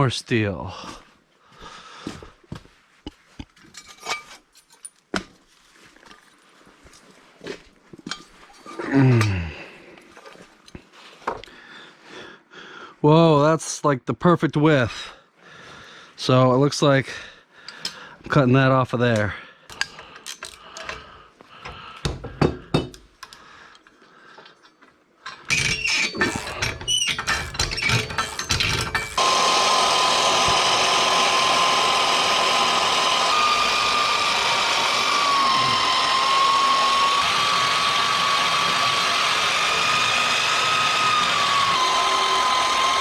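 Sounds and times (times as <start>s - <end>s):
steel pieces clanking: 19.7s - 20.9s, 25.3s - 29.2s
power tool cutting steel: 25.5s - 43.0s.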